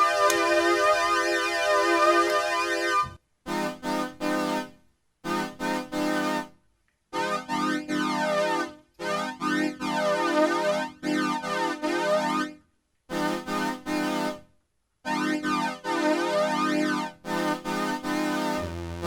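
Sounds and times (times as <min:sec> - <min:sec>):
synthesizer sustained chords: 0:18.5 - 0:19.0.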